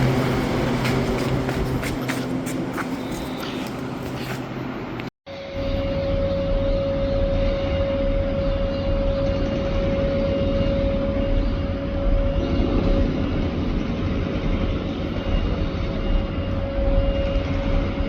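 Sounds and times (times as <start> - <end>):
electric train humming: 0.0 - 18.0.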